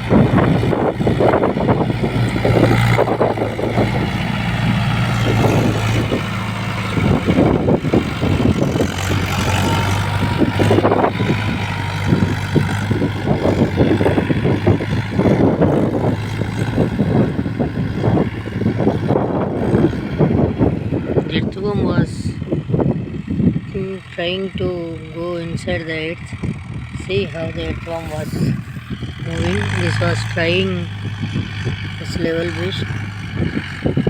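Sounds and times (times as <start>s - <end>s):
tractor diesel engine running: 0.0s - 34.0s.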